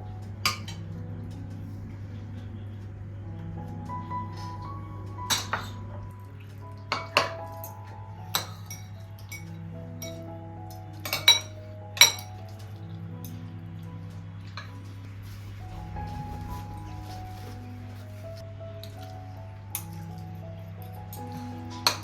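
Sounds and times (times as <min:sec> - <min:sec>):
soft background music: 0:00.0 - 0:22.0
dishes and utensils clinking: 0:00.4 - 0:00.8, 0:05.2 - 0:06.1, 0:06.9 - 0:13.4, 0:14.5 - 0:22.0.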